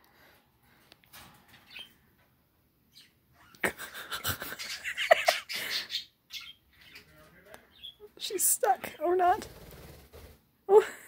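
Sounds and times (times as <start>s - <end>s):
bird chirping: 1.5s - 2.1s, 2.9s - 8.4s
rustling and fluttering: 9.2s - 10.5s.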